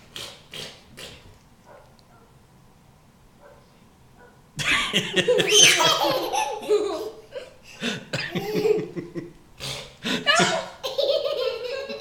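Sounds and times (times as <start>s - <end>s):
raspberry mouth noises: 0.0s - 1.5s
young child laughing: 4.6s - 9.3s, 10.1s - 12.0s.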